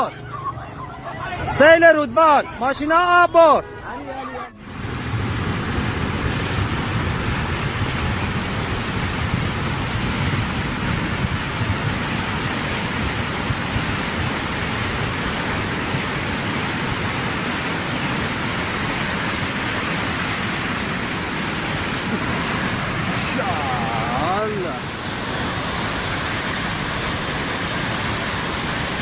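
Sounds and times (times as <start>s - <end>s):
floodwater rushing: 0.0s - 29.0s.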